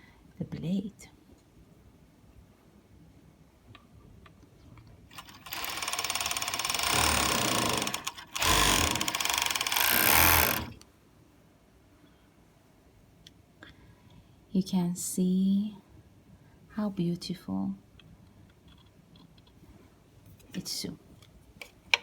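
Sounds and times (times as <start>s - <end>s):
overlock sewing machine stitching: 5.1s - 10.8s.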